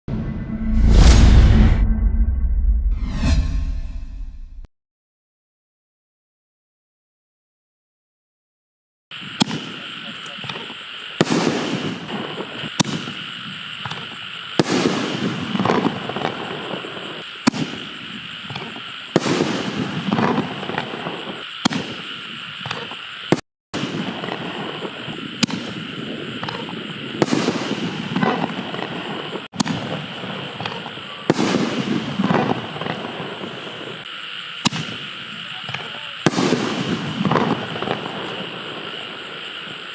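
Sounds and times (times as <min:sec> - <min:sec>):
firework crackling: 0:09.1 - 0:39.9.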